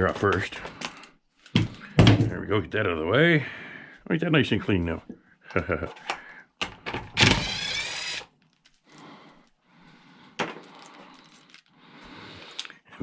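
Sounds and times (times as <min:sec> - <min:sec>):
power tool motor whirring: 0:07.2 - 0:08.3.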